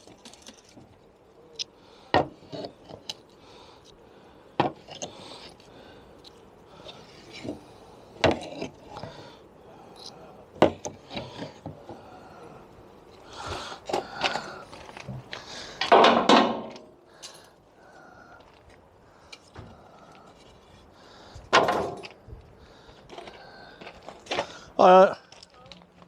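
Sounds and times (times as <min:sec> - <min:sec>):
planks scraping and clattering: 0:02.1 - 0:03.2, 0:06.8 - 0:09.2, 0:10.6 - 0:12.0, 0:13.4 - 0:16.9, 0:21.4 - 0:22.2
wooden boards knocked: 0:15.9 - 0:16.8.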